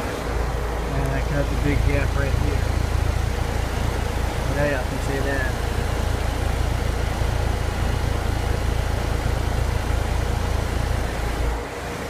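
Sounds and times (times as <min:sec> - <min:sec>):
air conditioner low rumble: 0:00.0 - 0:12.0
faint steady hum: 0:00.0 - 0:12.0.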